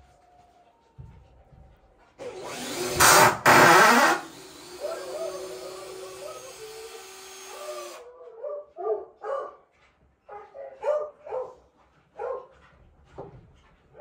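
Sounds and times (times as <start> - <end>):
cordless screwdriver motor running: 2.3 - 8.0
dog barking in short yaps: 8.4 - 9.6.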